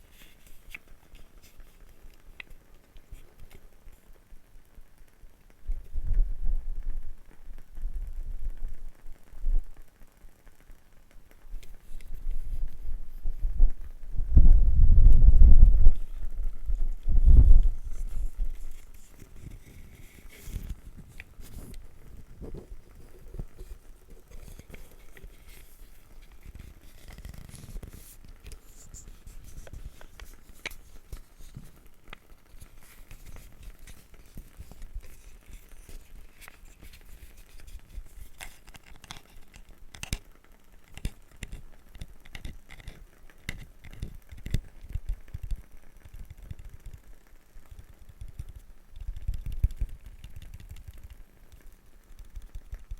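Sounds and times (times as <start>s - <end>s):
scratchy scraping and rustling: 15.8s - 40.3s
small wooden objects clicking: 22.4s - 47.0s, 47.7s - 52.9s.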